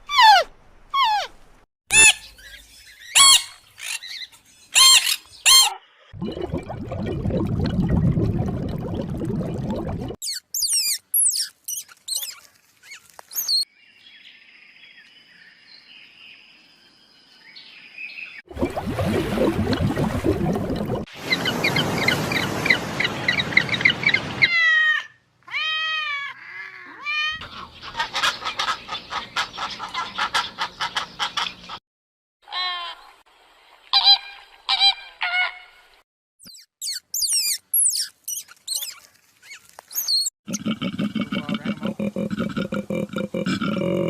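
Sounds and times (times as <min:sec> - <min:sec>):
high quick bird chirps: 0:10.2 - 0:13.6, 0:36.4 - 0:40.3
bird calls: 0:10.2 - 0:14.3, 0:27.3 - 0:31.8, 0:36.4 - 0:40.3.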